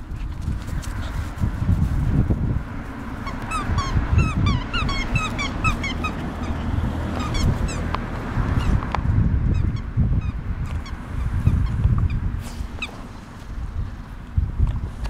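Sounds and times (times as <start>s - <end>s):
low rumbling noise: 0.0s - 15.0s
squeaky dog toy squeaking: 3.2s - 7.9s, 9.5s - 12.2s.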